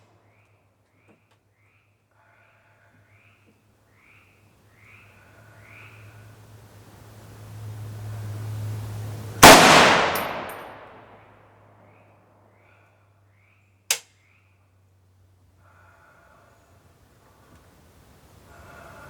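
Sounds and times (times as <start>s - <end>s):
rifle shot echoing: 9.4s - 11.2s.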